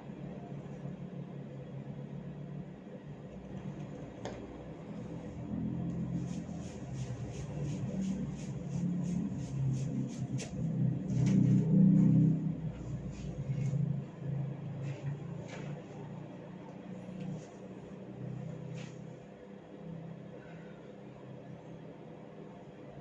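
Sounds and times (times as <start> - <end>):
low rumbling noise: 4.9 - 15.6.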